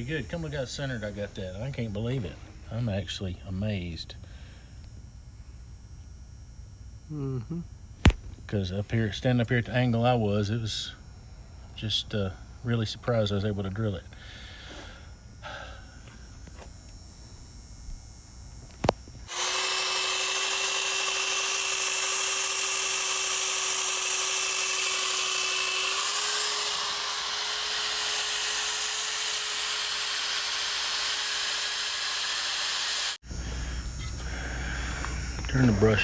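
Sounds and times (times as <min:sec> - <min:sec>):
electric drill spinning wire brush: 0:16.0 - 0:36.0.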